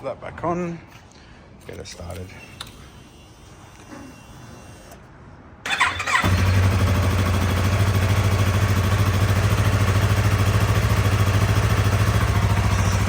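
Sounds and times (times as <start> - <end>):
electric starter cranking: 5.7 - 7.2
motorcycle engine idling: 5.7 - 13.0.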